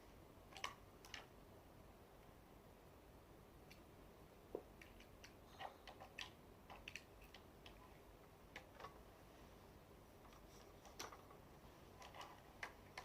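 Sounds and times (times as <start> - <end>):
small clicks and taps of parts: 10.2 - 11.4.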